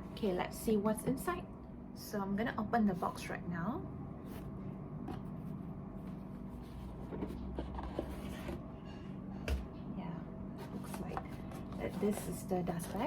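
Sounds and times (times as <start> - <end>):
cardboard packaging rustling: 10.6 - 13.0.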